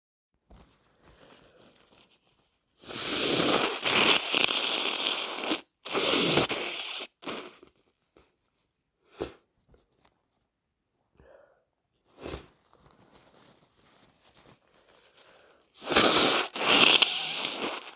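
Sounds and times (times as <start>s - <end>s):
person blowing nose: 2.8s - 7.8s, 9.1s - 9.4s, 12.1s - 12.5s, 15.1s - 17.9s.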